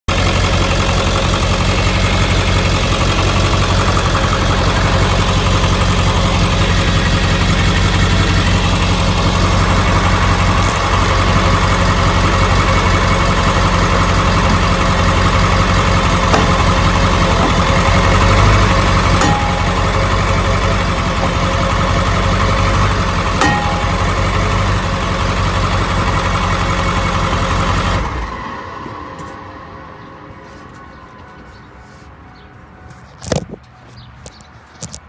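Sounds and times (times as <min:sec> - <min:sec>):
pickup truck engine running: 0:00.1 - 0:29.1
faint driveshaft knocks: 0:16.2 - 0:21.7.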